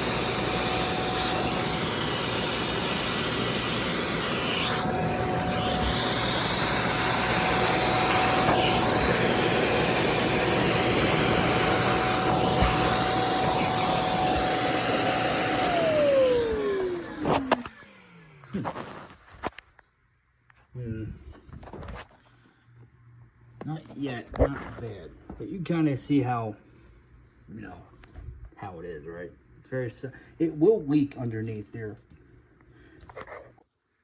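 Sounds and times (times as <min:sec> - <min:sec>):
motor spinning down: 0:00.0 - 0:19.0
carpet cleaner motor whining: 0:00.0 - 0:19.6.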